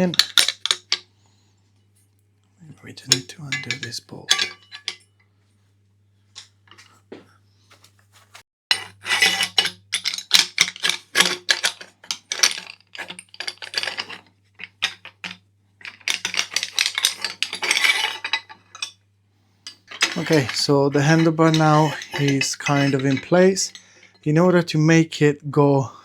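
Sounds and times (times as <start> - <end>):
metal tools clinking and scraping: 0.0 - 1.1, 2.7 - 5.2, 8.7 - 19.0, 19.6 - 24.7.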